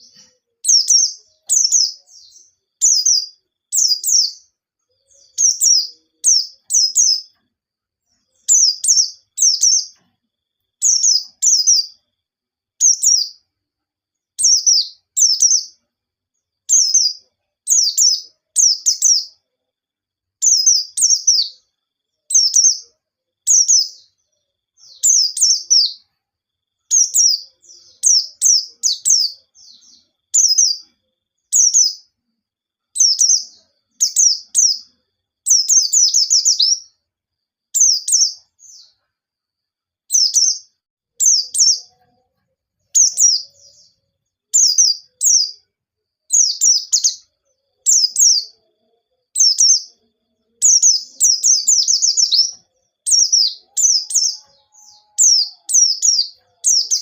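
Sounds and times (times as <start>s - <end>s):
white-eye singing high-pitched song: 0.0s - 7.4s, 8.3s - 10.0s, 26.9s - 32.1s, 35.5s - 37.0s, 40.1s - 42.1s, 42.8s - 44.0s, 46.3s - 57.0s.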